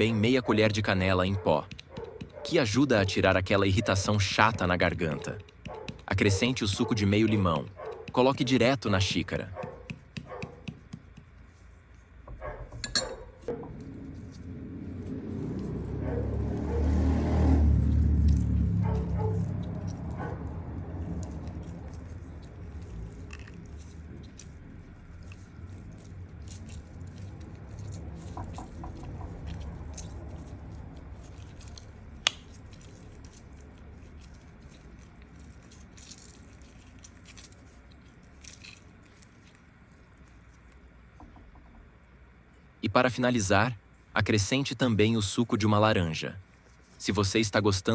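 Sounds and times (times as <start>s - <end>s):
dishes clinking: 12.7s - 13.5s
low rumble: 13.5s - 32.2s
wet squishing of citrus fruit: 13.7s - 41.2s.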